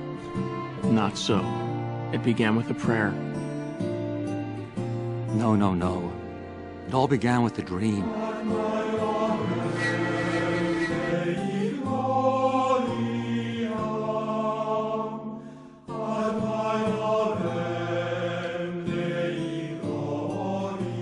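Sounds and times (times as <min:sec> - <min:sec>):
slow chant style music: 0:00.0 - 0:21.0
low sustained drone: 0:09.3 - 0:11.8.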